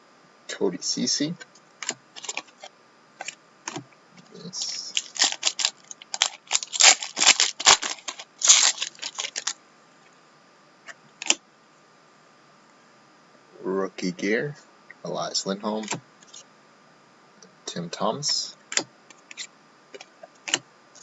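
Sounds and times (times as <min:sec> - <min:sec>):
card wrapper crinkling: 0:02.2 - 0:03.4, 0:04.6 - 0:09.6.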